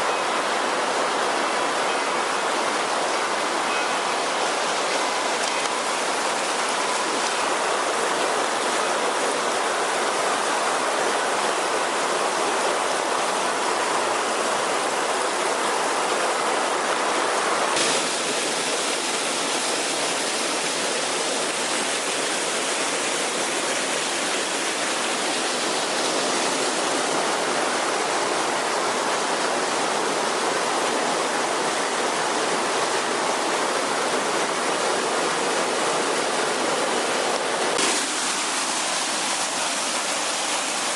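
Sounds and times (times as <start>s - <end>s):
heavy rain downpour: 0.0s - 40.9s.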